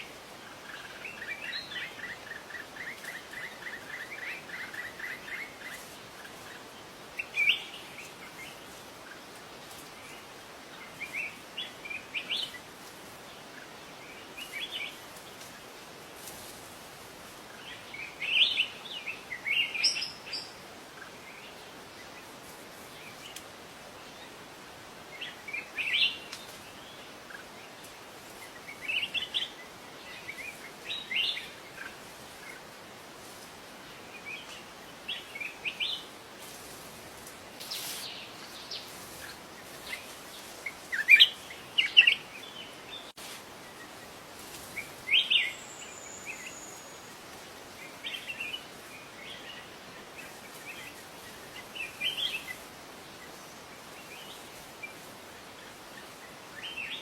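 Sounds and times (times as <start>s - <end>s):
steady background hiss: 0.0s - 57.0s
bird chirping: 17.5s - 22.3s, 37.6s - 44.1s, 44.8s - 52.6s.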